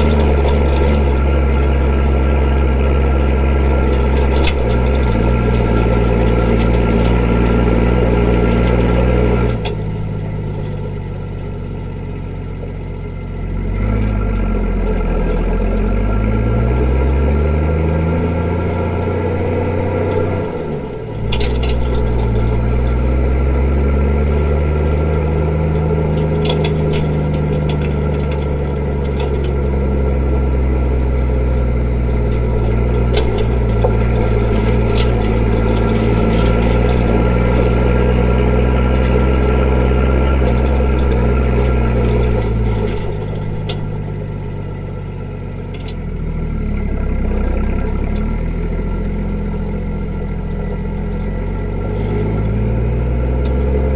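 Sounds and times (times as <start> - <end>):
diesel engine revving: 0.0 - 53.9.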